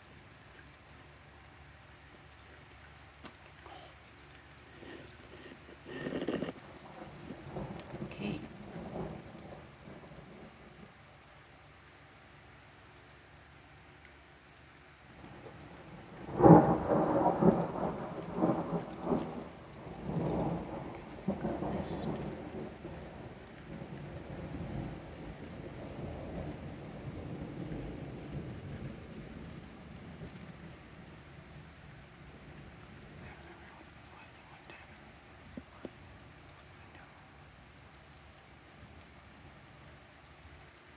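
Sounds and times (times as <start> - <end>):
rain: 0.0 - 40.9
thunder crack and rumbles: 4.7 - 11.0, 15.2 - 36.0.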